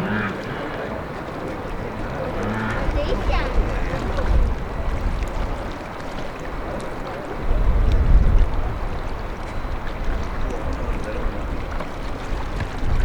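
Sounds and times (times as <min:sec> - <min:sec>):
distant outboard engines droning: 0:00.0 - 0:07.4
wind buffeting microphone: 0:00.0 - 0:13.0.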